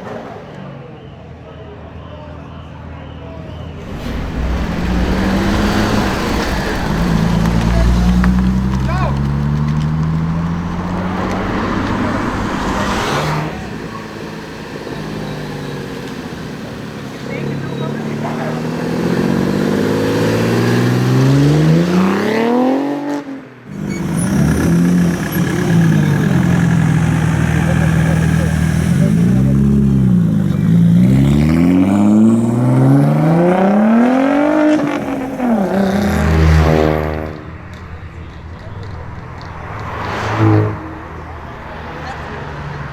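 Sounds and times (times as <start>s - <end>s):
car engine running: 3.8s - 18.6s
rush of car noise: 3.8s - 42.9s.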